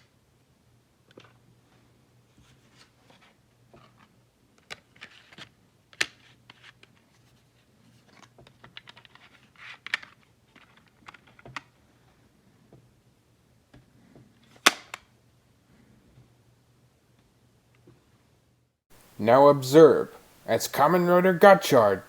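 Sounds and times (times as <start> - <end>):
plastic toy clicks and rustles: 8.1 - 11.7.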